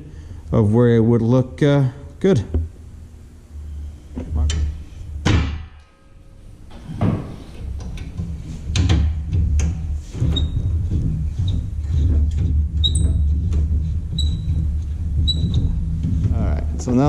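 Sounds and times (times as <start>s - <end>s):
steady low hum: 0.0s - 17.0s
short high squeaks: 12.8s - 13.3s, 14.1s - 14.6s.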